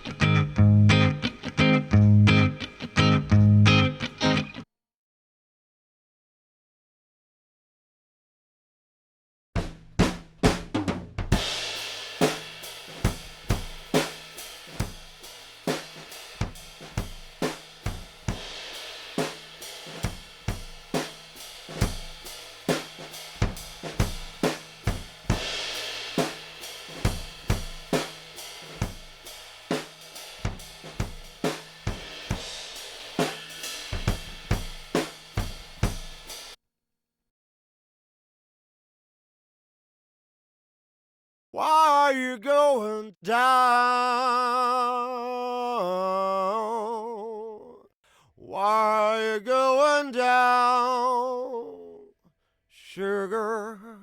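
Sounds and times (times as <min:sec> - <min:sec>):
acoustic drum kit playing: 0:00.0 - 0:04.4, 0:09.6 - 0:36.6.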